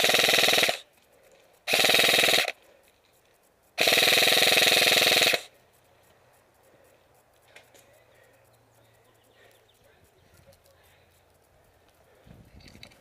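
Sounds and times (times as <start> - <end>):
airsoft gun firing full auto: 0.0 - 0.9, 1.7 - 2.6, 3.8 - 5.5.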